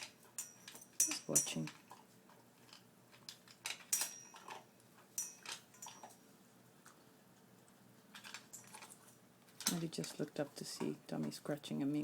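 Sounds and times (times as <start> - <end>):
dog crunching dry food: 0.0 - 6.2, 6.8 - 11.4
bowl clinking: 3.6 - 6.2.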